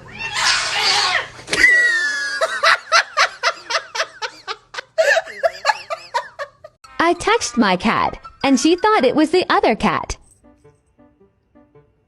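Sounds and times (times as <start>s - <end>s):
person laughing: 1.9s - 6.8s.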